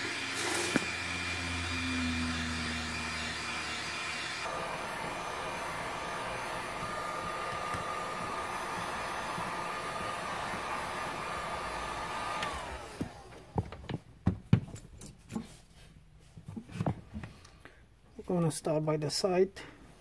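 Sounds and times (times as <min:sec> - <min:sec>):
hot-air gun whining: 0:00.0 - 0:14.0.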